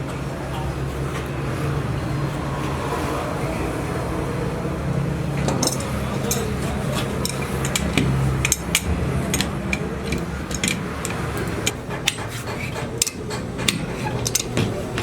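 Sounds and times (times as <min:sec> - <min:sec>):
metallic clinks and taps: 0:05.4 - 0:15.0.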